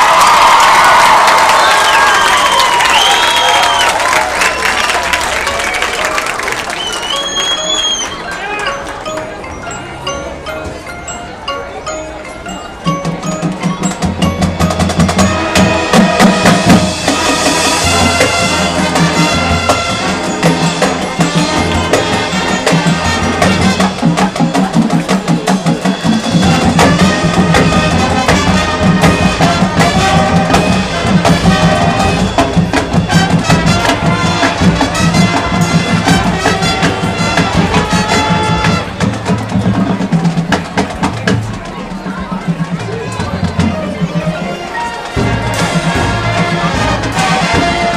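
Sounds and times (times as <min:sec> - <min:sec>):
marching band playing: 0:00.0 - 0:47.9
drum strikes: 0:12.8 - 0:47.9.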